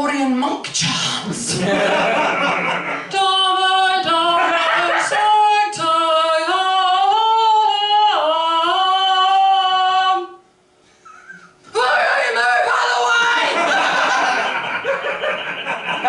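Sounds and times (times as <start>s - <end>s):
woman singing chant: 3.1s - 10.4s.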